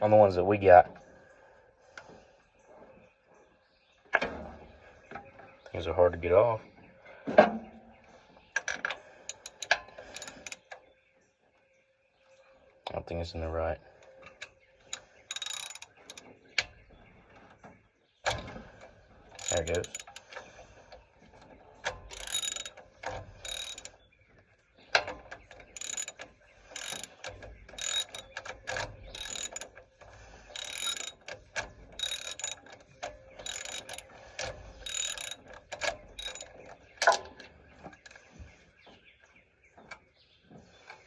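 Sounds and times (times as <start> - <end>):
ratchet wrench clicking: 8.6 - 10.6, 14.9 - 16.2, 19.4 - 20.3, 21.9 - 23.9, 25.8 - 29.8, 30.5 - 36.6.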